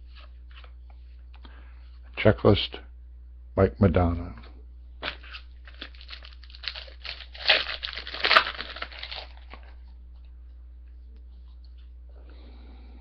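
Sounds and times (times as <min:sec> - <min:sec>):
wrapper tearing and crinkling: 0:05.0 - 0:09.8.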